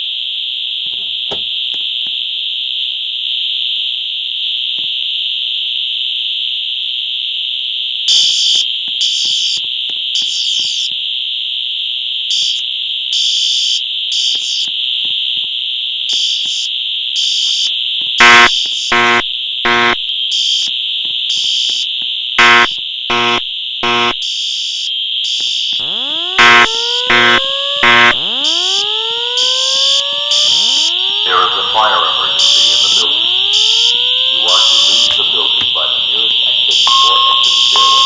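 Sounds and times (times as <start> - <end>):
pulsing alarm horns: 0.0 - 38.0
high-pitched alarm tone: 8.1 - 10.9, 12.2 - 14.7, 15.9 - 38.0
loud horn short blasts: 18.2 - 20.0, 22.4 - 24.2, 26.4 - 28.2.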